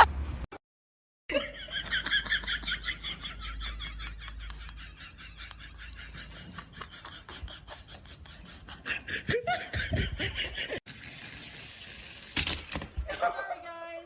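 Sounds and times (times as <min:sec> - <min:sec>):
person laughing: 0:01.3 - 0:10.8.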